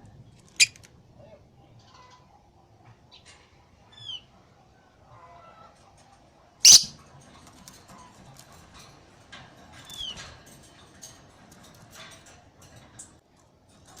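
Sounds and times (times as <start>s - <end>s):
falling bird chirp: 6.7s - 6.9s
shrill bird screech: 6.7s - 6.9s.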